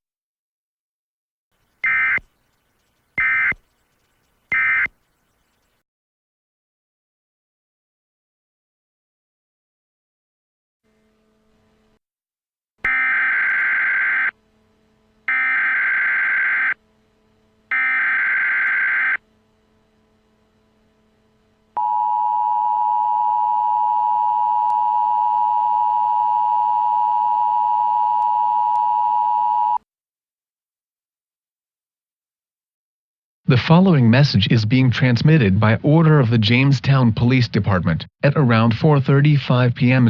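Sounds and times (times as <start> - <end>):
digital header data bursts: 1.8 - 5.5.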